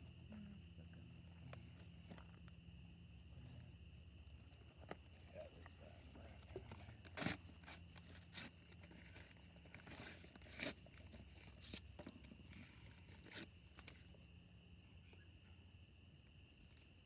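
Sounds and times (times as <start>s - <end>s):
crunches scrapes and clicks: 6.6s - 14.0s.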